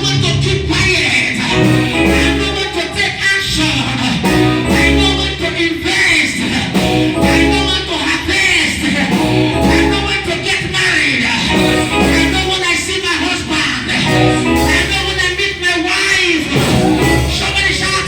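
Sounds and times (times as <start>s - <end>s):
repeating bass note: 0.0s - 5.6s, 6.8s - 8.2s, 9.1s - 10.2s, 11.5s - 12.7s, 14.1s - 15.5s, 16.6s - 17.9s
upbeat band music with guitar: 0.0s - 10.5s, 11.4s - 15.7s, 16.4s - 18.0s.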